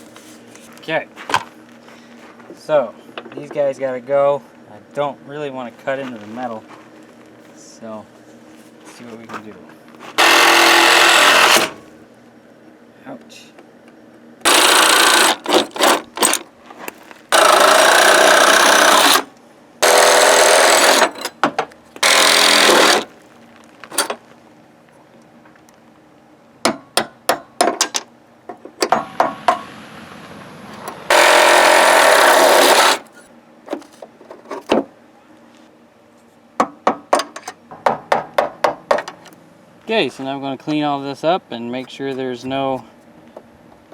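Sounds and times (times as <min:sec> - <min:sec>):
reciprocating saw cutting steel: 0:10.2 - 0:11.8, 0:14.5 - 0:16.1, 0:17.4 - 0:21.3, 0:22.0 - 0:23.1, 0:30.8 - 0:33.2.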